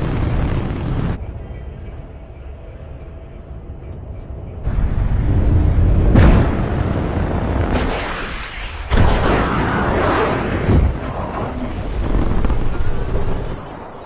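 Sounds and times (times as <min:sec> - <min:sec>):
loud roaring rush: 0:00.0 - 0:01.2, 0:04.7 - 0:13.6
low rumble: 0:00.0 - 0:14.0.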